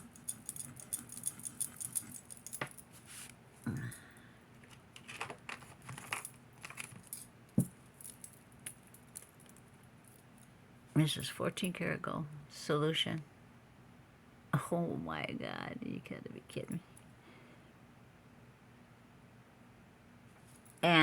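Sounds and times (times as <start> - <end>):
metallic jingling of jewelry: 0.0 - 3.2, 6.1 - 10.6
small clicks of items handled: 4.6 - 10.5.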